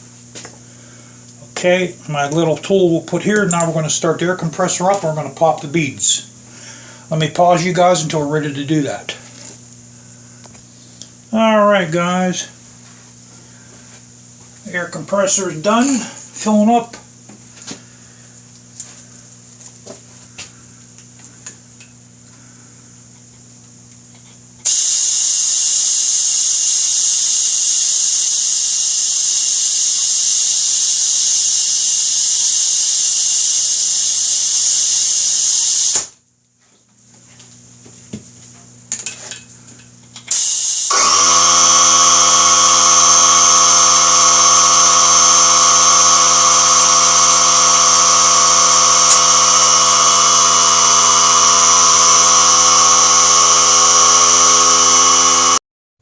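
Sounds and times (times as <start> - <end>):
air compressor motor running: 15.2 - 16.7, 24.6 - 36.1, 40.3 - 55.6
compressed air hissing: 24.6 - 36.1, 40.3 - 41.3, 43.8 - 54.6.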